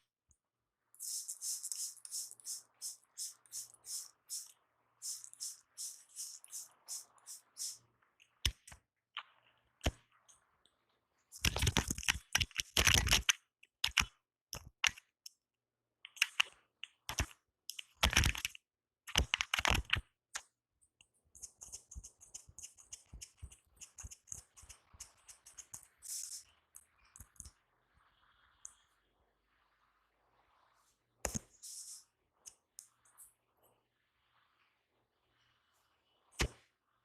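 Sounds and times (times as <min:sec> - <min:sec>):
hands rubbing and patting hair: 0:01.0 - 0:07.8.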